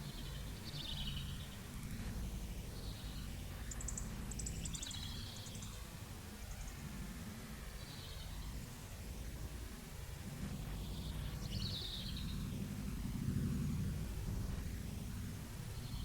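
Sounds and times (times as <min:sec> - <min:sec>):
low background rumble: 0:00.0 - 0:16.0.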